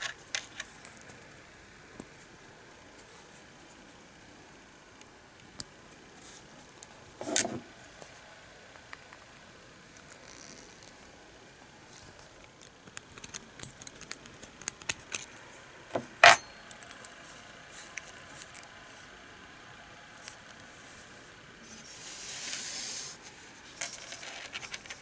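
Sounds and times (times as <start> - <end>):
metal parts clinking on a surface: 16.2 - 17.1, 23.8 - 25.0.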